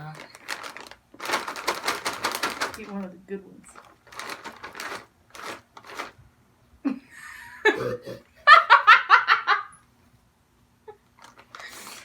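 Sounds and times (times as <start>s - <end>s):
soft rustling: 3.7s - 6.2s
person laughing loudly: 6.9s - 9.7s
low grunt: 7.7s - 8.3s.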